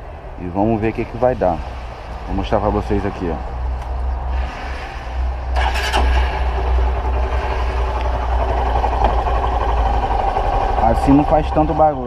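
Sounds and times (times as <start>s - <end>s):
motorcycle engine idling: 6.4s - 12.0s.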